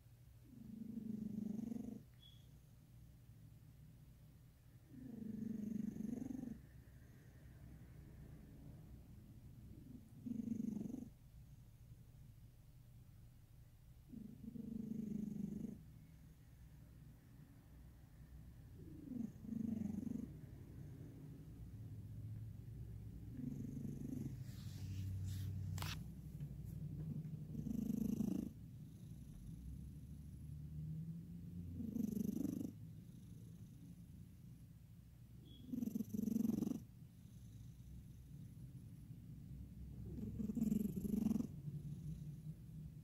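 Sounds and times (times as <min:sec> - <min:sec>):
pet snoring: 0:00.5 - 0:02.0, 0:04.9 - 0:06.6, 0:09.8 - 0:11.2, 0:14.1 - 0:15.8, 0:18.8 - 0:21.0, 0:23.3 - 0:26.0, 0:27.0 - 0:30.3, 0:31.7 - 0:34.0, 0:35.4 - 0:38.5, 0:40.0 - 0:42.5.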